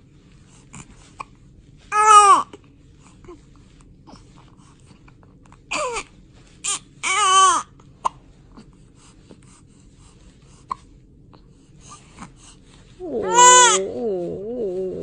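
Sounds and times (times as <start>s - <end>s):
baby crying: 7.0s - 7.6s, 13.0s - 14.0s.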